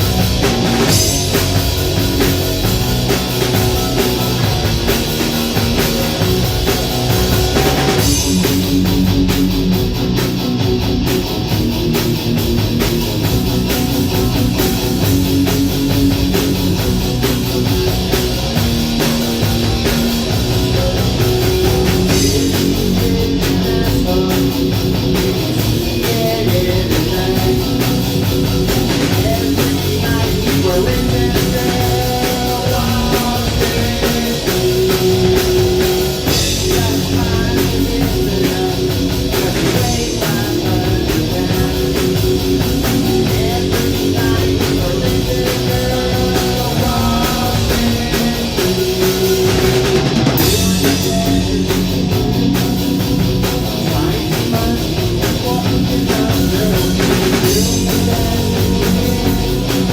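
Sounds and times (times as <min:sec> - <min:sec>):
rock band playing live: 0:00.0 - 0:59.9.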